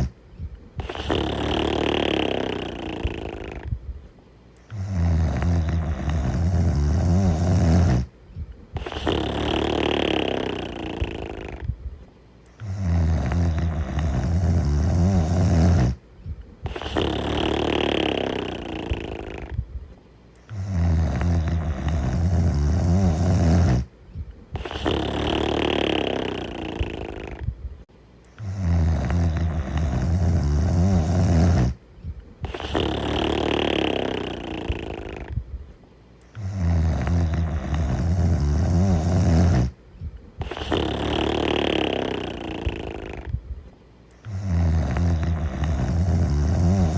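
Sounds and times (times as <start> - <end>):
low snore: 0.8 - 3.8, 4.6 - 8.1, 8.7 - 11.8, 12.5 - 16.0, 16.6 - 19.7, 20.4 - 23.9, 24.5 - 27.5, 28.3 - 31.8, 32.4 - 35.4, 36.2 - 39.8, 40.4 - 43.4, 44.1 - 46.9.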